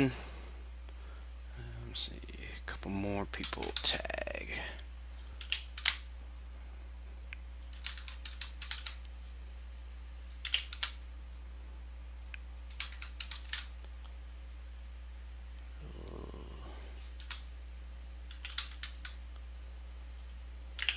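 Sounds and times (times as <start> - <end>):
low electrical hum: 0.0 - 20.9
keyboard typing: 5.1 - 6.0, 7.6 - 9.1, 10.2 - 11.0, 12.7 - 13.7, 17.2 - 17.5, 18.3 - 19.2, 20.0 - 20.9.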